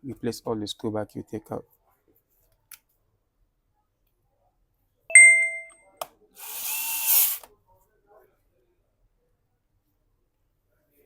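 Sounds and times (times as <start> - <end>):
electric screwdriver whirring: 6.4 - 7.5.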